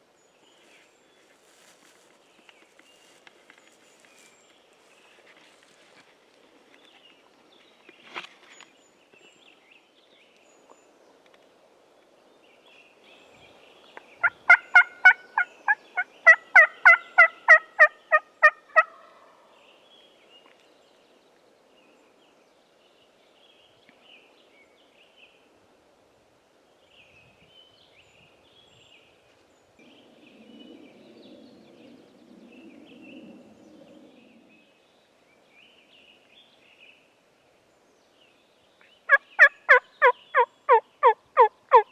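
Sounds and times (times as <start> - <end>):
turkey yelping: 14.5 - 15.2, 16.3 - 19.1, 39.4 - 41.8
faint low rumble: 29.8 - 36.6.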